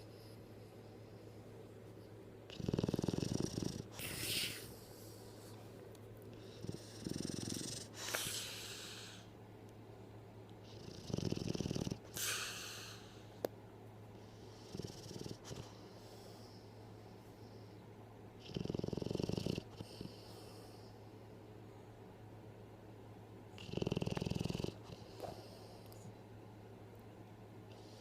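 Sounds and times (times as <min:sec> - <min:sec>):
pet snoring: 0:02.5 - 0:05.1, 0:06.3 - 0:09.3, 0:10.6 - 0:13.1, 0:14.2 - 0:16.5, 0:18.4 - 0:20.9, 0:23.5 - 0:25.9.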